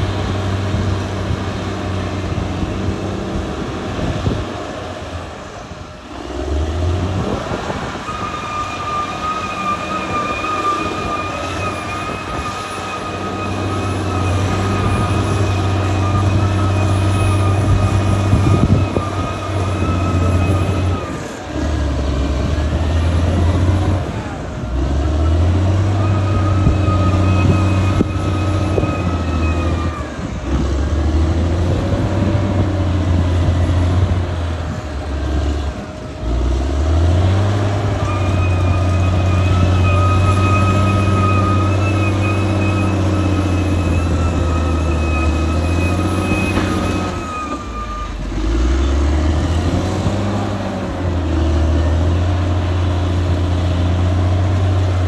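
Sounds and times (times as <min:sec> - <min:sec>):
bulldozer diesel engine running: 0:00.0 - 0:55.0
thin high whine: 0:07.2 - 0:31.0, 0:37.5 - 0:48.5.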